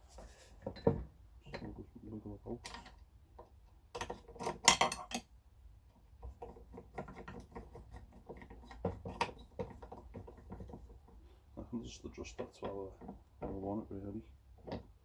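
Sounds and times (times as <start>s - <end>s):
clicks and rattles of parts: 2.6s - 5.3s.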